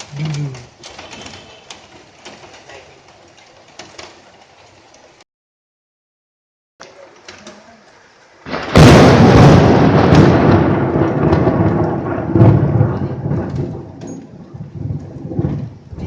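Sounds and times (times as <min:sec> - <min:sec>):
rain falling: 0:00.0 - 0:05.2, 0:06.8 - 0:16.0
deep thunder rumble: 0:08.4 - 0:16.0
thunderclap crack: 0:08.4 - 0:16.0.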